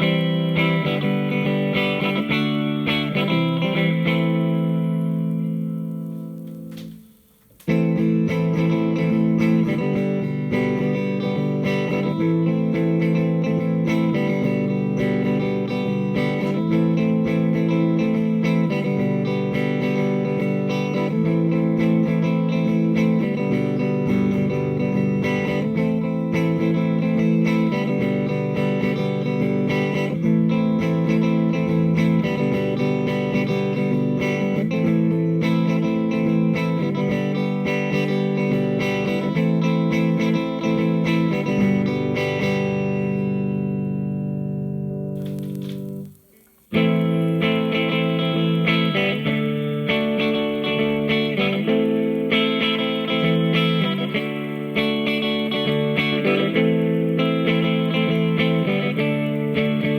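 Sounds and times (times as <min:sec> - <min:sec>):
electric guitar chords: 0:00.0 - 0:59.9.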